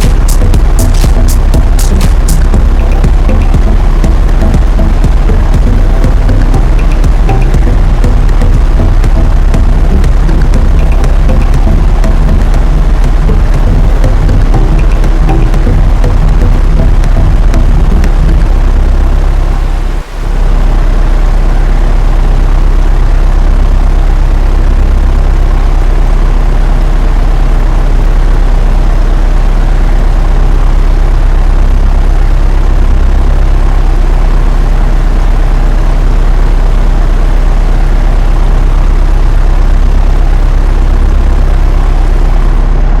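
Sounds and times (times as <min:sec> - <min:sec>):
propeller aircraft engine drone: 0:00.0 - 0:43.0.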